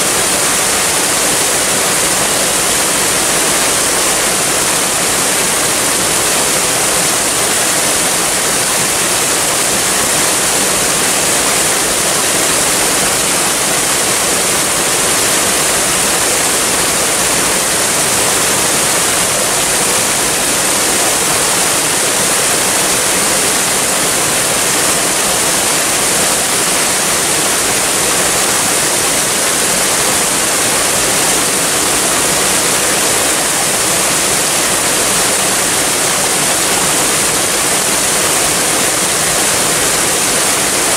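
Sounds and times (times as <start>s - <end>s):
waterfall rushing: 0.0s - 40.9s.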